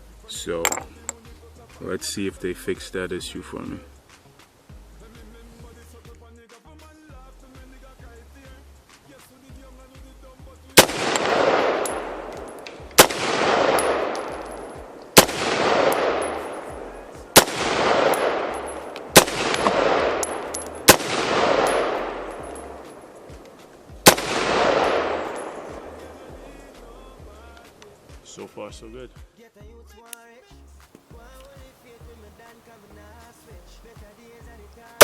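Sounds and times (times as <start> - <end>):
rifle shots with rolling echo: 10.8 - 27.2.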